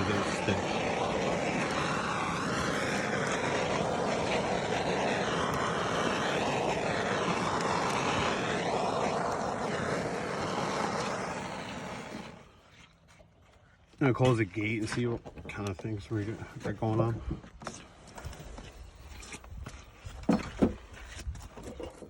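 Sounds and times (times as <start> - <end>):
gas torch hissing: 0.0 - 12.6.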